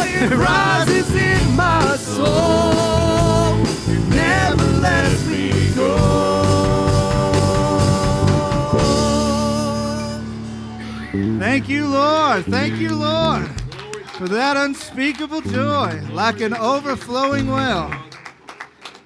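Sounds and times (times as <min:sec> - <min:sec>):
person singing gospel: 0:00.0 - 0:10.5
instrumental accompaniment: 0:00.0 - 0:13.7.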